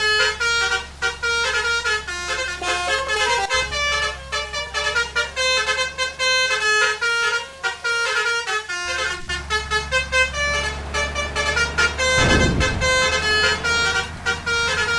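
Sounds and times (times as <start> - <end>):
low engine hum: 0.0 - 14.9
melodic vehicle horns: 0.0 - 14.9
low rumble: 11.9 - 14.8.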